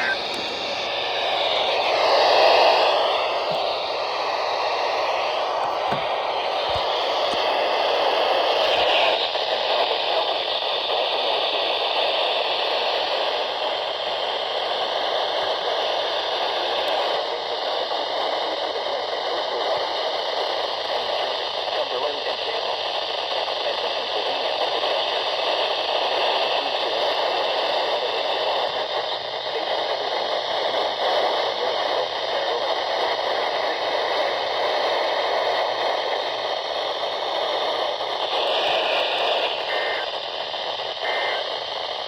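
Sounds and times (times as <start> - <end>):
faint short blips: 0.0 - 1.5
radio static hiss: 0.0 - 42.0.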